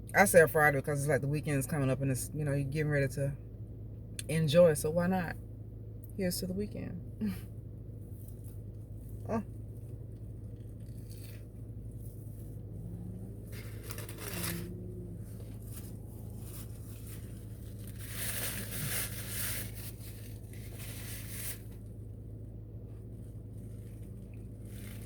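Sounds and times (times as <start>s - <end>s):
low hum: 1.1s - 25.0s
crunchy eating noises: 9.1s - 21.0s
wrapper crinkling: 15.7s - 21.8s.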